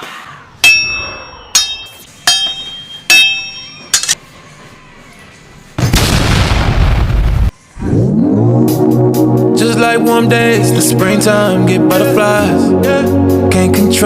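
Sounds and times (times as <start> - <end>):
ringing metallic dings: 0.6 - 4.2.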